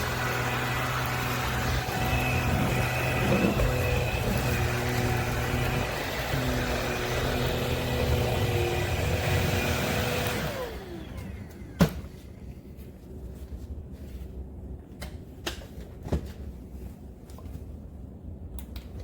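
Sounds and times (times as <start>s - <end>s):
stick vacuum whine and air rush: 0.0s - 12.5s.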